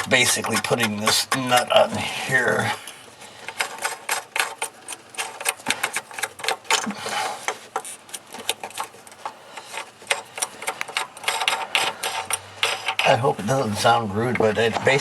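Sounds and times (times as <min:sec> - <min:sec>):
nut clicking and rattling on threads: 0:00.0 - 0:13.8.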